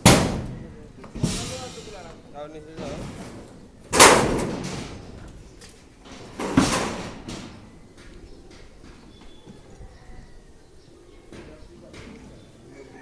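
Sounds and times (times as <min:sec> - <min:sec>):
loud metal clangs: 0:00.0 - 0:05.3, 0:06.1 - 0:07.8.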